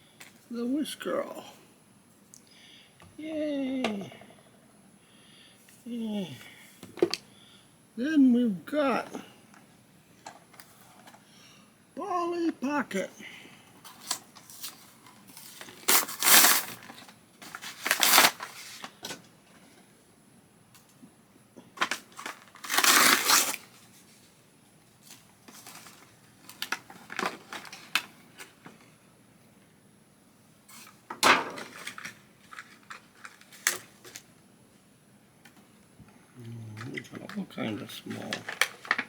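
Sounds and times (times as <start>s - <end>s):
plastic and card crinkling: 13.9s - 19.0s, 21.8s - 24.1s, 25.1s - 28.6s, 31.7s - 34.3s, 36.8s - 39.0s.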